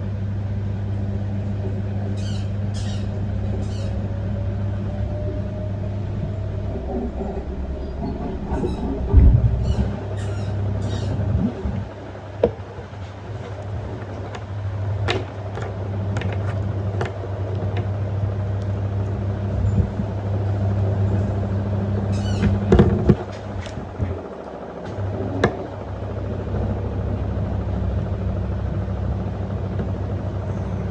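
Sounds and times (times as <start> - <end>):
washing machine motor hum: 0.0 - 30.9
heavy thump: 8.6 - 10.0.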